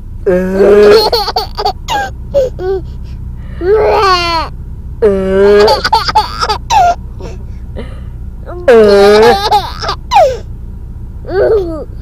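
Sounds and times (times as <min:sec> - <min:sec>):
baby laughing: 0:00.6 - 0:02.8, 0:05.4 - 0:07.4, 0:08.8 - 0:10.4.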